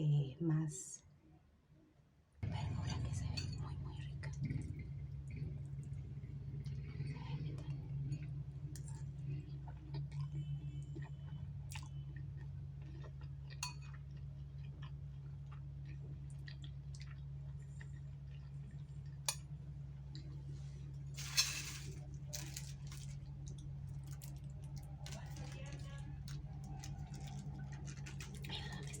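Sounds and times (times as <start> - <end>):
steady low hum: 0.0 - 29.0
person chewing food: 4.2 - 20.5.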